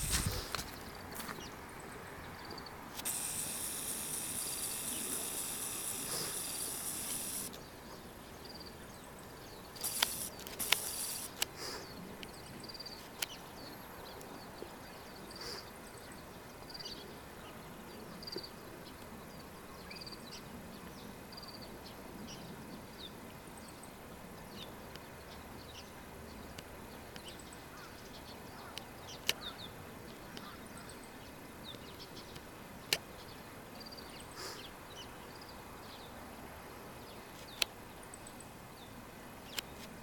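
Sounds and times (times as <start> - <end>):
sharp clicks: 3.0 - 7.6, 9.8 - 11.6.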